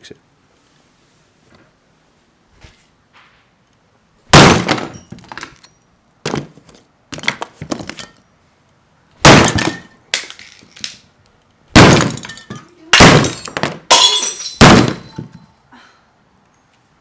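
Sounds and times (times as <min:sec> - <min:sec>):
glass cracking and breaking: 0:11.8 - 0:15.4.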